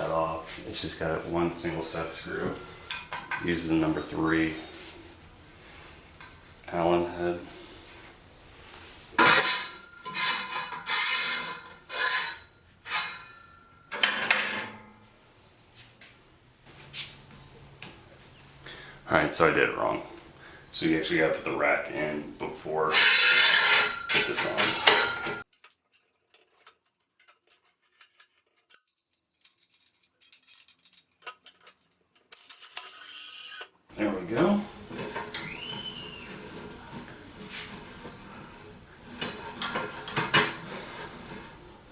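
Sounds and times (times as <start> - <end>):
metal scraping on metal: 8.9 - 14.9, 22.8 - 25.4, 34.3 - 41.9
metal piece ringing: 22.9 - 25.4
metal parts clinking: 23.0 - 33.6.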